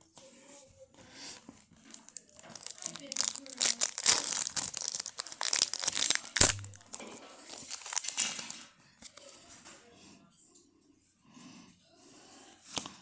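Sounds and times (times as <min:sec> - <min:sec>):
card pack wrapper tearing and crinkling: 0:01.6 - 0:08.6.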